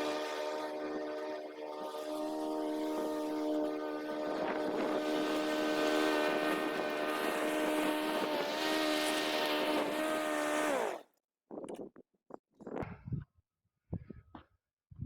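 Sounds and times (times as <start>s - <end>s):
lawn mower engine winding down: 0.0s - 11.0s.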